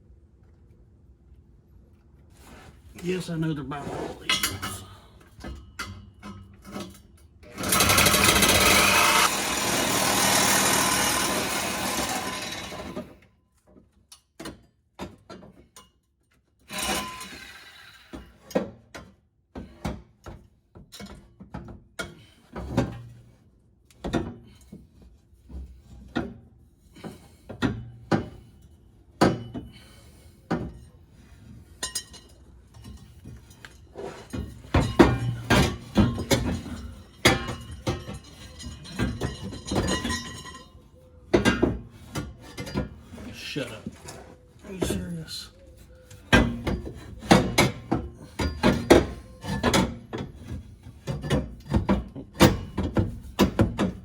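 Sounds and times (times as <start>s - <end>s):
power tool running: 7.5s - 13.1s.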